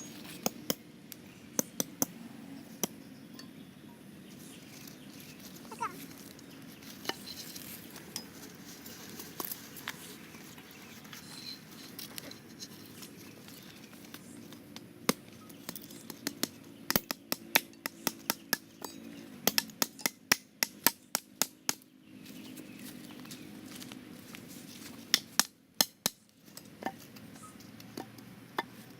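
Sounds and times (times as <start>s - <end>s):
faint steady hum: 0.0s - 17.9s.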